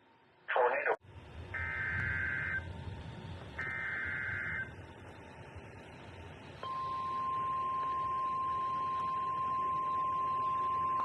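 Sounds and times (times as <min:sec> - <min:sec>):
steady warning alarm tone: 0:01.5 - 0:02.7, 0:03.6 - 0:04.8, 0:06.6 - 0:11.0.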